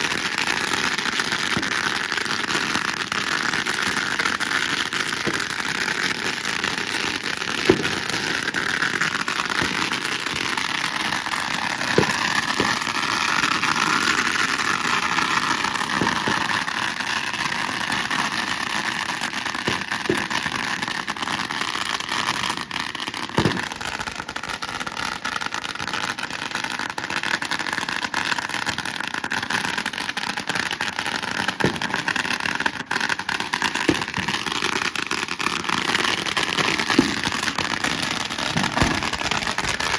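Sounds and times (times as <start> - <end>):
loud firecracker bangs: 0.0 - 21.0, 23.2 - 24.9, 31.4 - 39.9
firecrackers crackling: 0.0 - 39.9.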